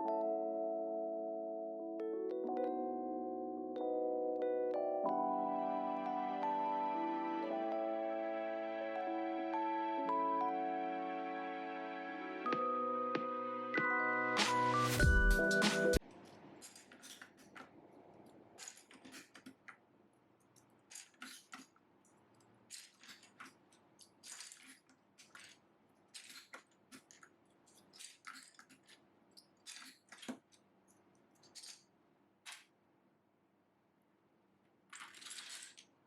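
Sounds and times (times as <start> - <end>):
plastic keycaps clacking together: 16.0 - 17.8, 18.6 - 19.8, 20.4 - 31.9, 32.5 - 32.7, 34.9 - 36.0.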